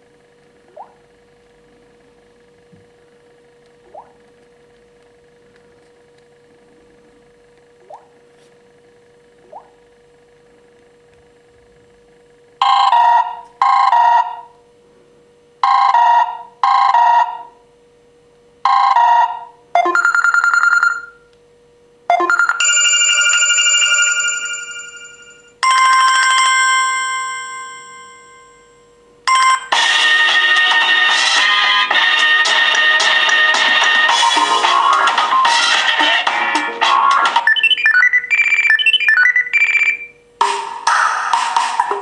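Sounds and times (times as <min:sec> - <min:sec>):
faint steady hum: 0:00.0 - 0:42.0
tablet ringtones playing: 0:19.8 - 0:21.1, 0:22.1 - 0:28.1, 0:29.3 - 0:40.1.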